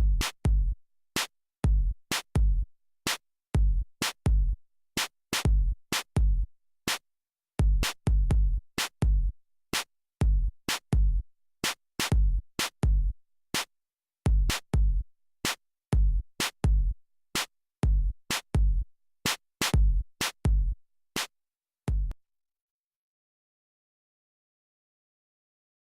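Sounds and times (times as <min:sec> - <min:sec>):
drum machine beat: 0:00.0 - 0:07.0, 0:07.6 - 0:13.7, 0:14.3 - 0:15.0, 0:16.0 - 0:21.3, 0:21.9 - 0:22.2.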